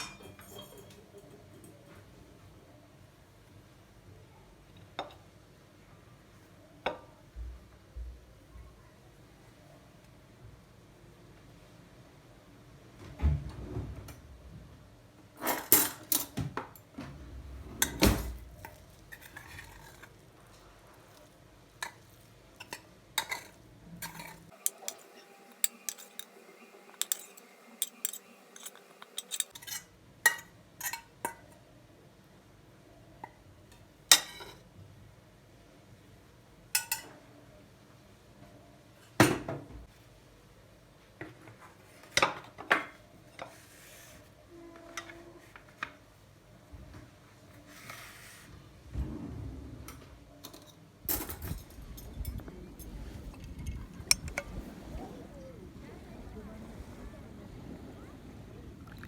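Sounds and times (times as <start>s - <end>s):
utensils clinking against crockery: 0.0s - 1.8s, 21.0s - 31.4s, 50.5s - 54.6s.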